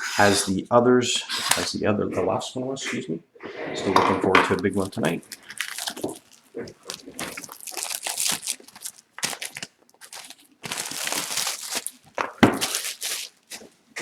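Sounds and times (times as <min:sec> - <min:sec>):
plastic wrapping crinkling and tearing: 0:04.4 - 0:14.0.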